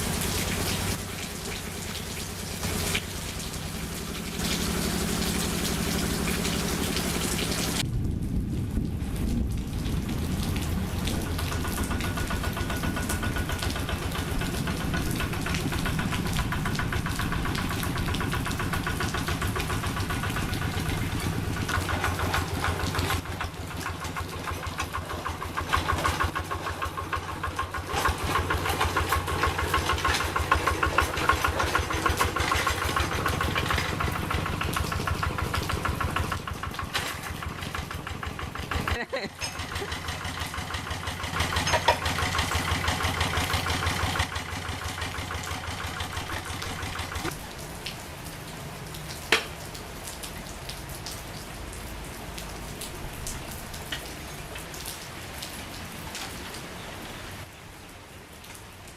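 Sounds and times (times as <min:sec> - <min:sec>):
hand tractor diesel engine running: 0:11.0 - 0:47.4.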